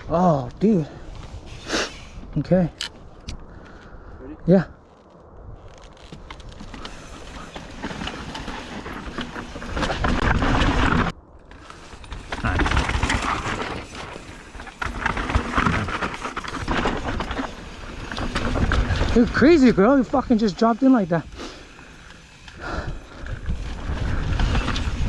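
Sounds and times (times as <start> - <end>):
bike rattling: 4.9 - 25.0
tyres crunching over dirt and rock: 5.0 - 24.6.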